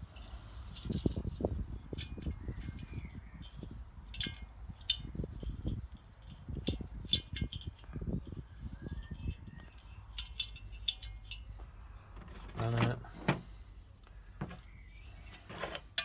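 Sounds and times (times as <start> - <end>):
low rumble of handling: 5.3 - 15.7
metal parts and tools clinking: 9.7 - 13.6.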